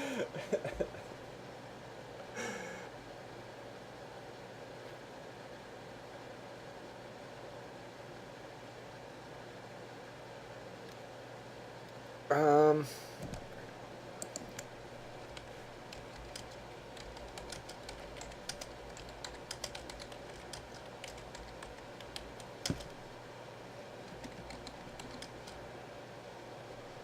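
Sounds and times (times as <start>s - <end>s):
keyboard key clicks: 15.3s - 23.0s.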